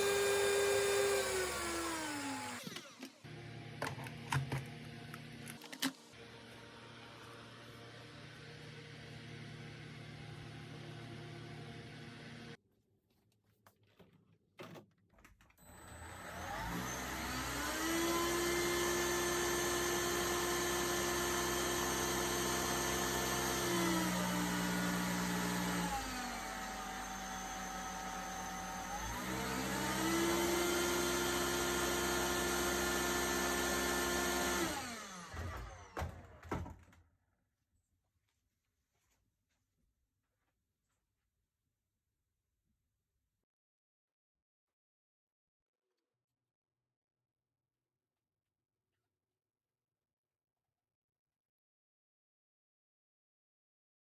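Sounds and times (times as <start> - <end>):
vacuum cleaner motor whine: 0.0 - 12.6, 15.6 - 36.7.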